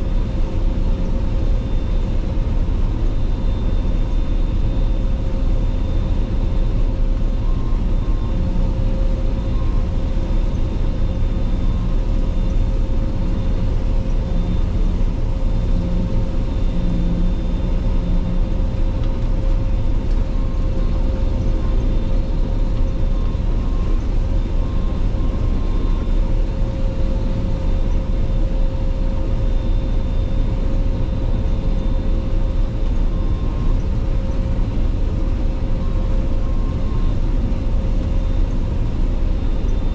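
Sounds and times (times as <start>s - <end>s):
combine harvester engine rumble: 0.0s - 39.9s.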